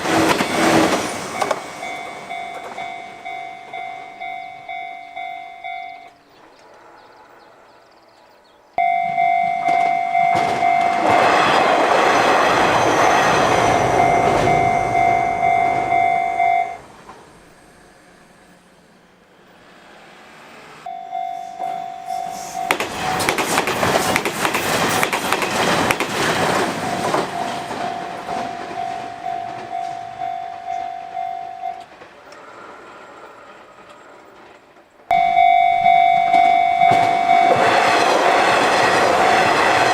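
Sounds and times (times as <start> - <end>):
train wheels clattering on rails: 0.0 - 5.3, 8.8 - 18.1, 22.1 - 35.2, 35.8 - 39.9
railroad crossing bell ringing: 0.0 - 7.5, 8.8 - 17.6, 20.8 - 23.4, 25.9 - 32.0, 35.1 - 39.9.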